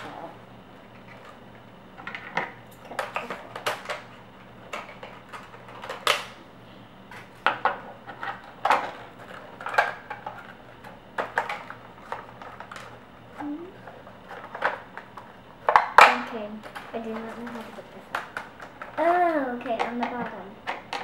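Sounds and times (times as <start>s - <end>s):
plastic toy parts clattering: 4.7s - 6.3s.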